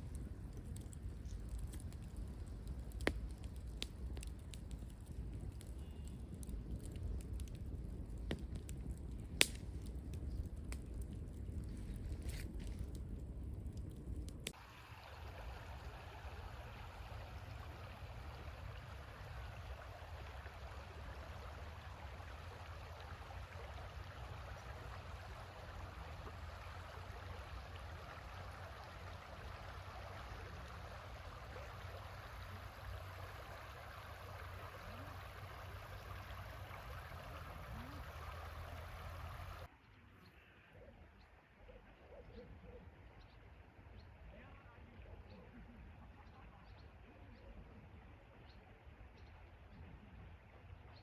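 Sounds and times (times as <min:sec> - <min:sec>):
river water flowing: 0:14.6 - 0:39.7.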